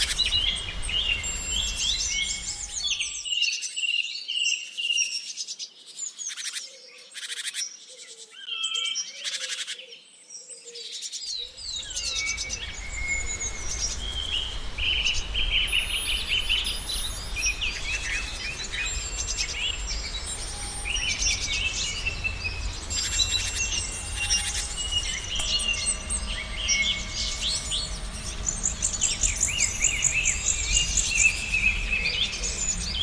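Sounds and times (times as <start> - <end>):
background hiss: 0.0 - 3.3, 11.3 - 33.0
birds chirping and singing: 0.0 - 3.5, 11.2 - 33.0
low rumble: 11.5 - 33.0.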